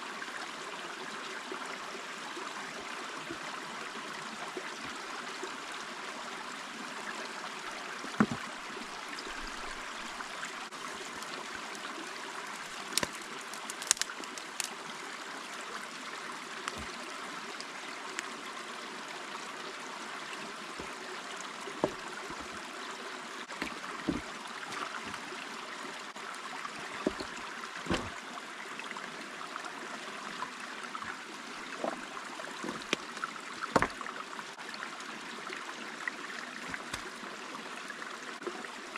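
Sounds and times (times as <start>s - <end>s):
creek water running: 0.0s - 38.9s
sharp knocks: 27.9s - 28.1s.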